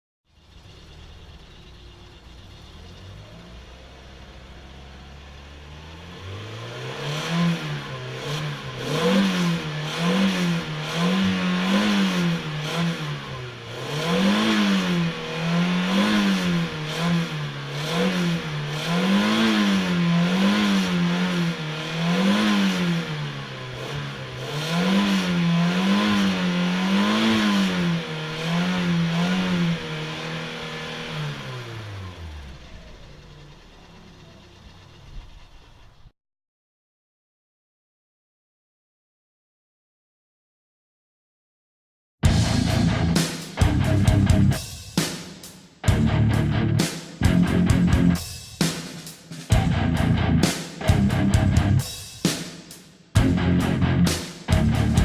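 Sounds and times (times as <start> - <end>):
car engine idling and revving: 0.3 - 36.1, 42.2 - 45.1, 45.8 - 48.3, 49.4 - 55.0.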